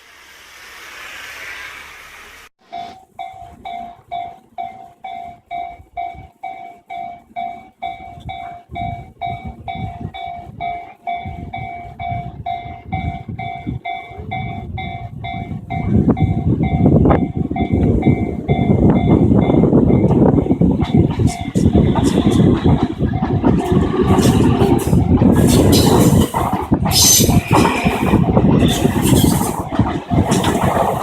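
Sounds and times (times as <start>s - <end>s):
train rumble: 0.0s - 31.0s
level-crossing bell ringing: 2.7s - 20.6s.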